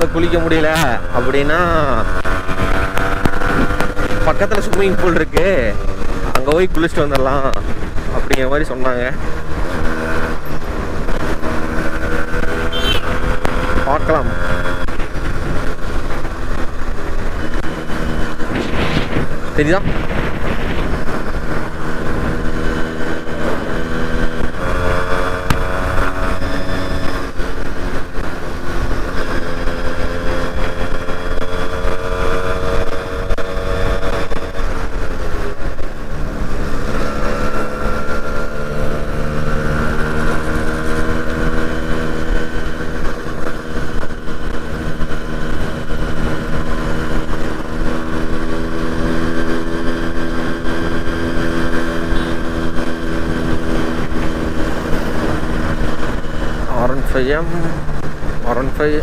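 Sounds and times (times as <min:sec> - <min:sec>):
motorcycle engine revving: 0:00.0 - 0:59.0
steady low rumble: 0:13.3 - 0:24.8.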